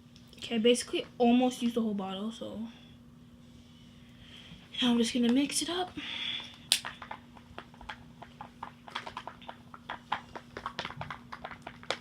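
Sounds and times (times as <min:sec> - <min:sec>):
faint steady hum: 0:00.0 - 0:12.0
stirring clicks and taps: 0:06.4 - 0:12.0.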